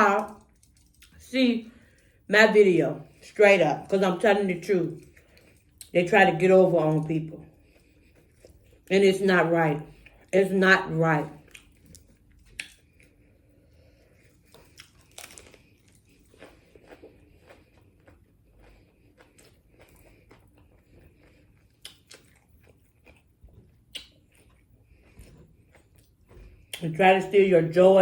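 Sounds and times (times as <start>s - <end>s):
food crunching: 0.0s - 2.2s, 4.8s - 6.0s, 11.4s - 26.9s
chewing and biting food: 0.1s - 2.2s, 4.9s - 6.0s, 6.9s - 8.9s, 11.4s - 26.9s
mouth clicks: 23.9s - 24.2s.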